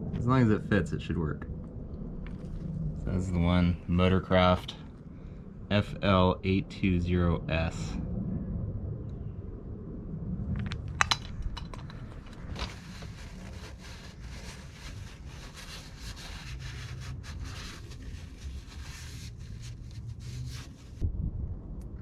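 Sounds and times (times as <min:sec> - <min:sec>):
rubbing and scraping handling noise: 0:10.6 - 0:21.0.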